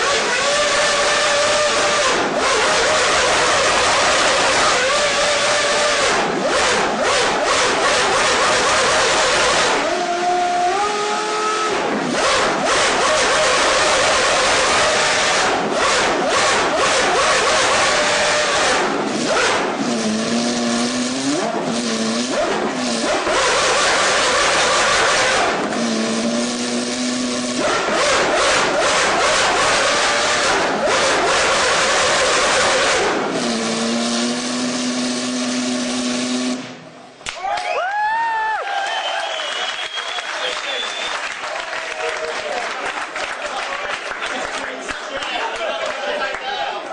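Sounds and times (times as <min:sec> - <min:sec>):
gear changes: 0:00.0 - 0:37.1
racing car engine revving: 0:00.0 - 0:37.2.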